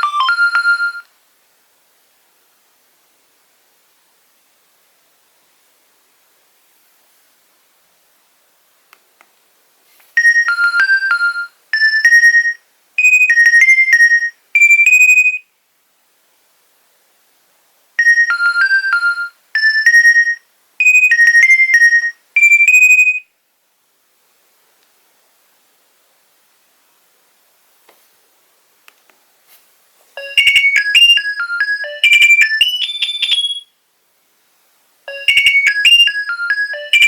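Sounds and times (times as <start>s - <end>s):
mobile phone ringtone beeping melody: 0.0s - 1.1s, 10.2s - 15.4s, 18.0s - 23.2s, 30.2s - 33.7s, 35.1s - 37.0s.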